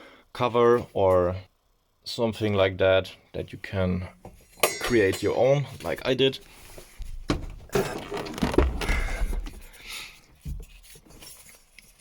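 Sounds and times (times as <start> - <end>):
parts rustling and scraping: 4.3 - 12.0.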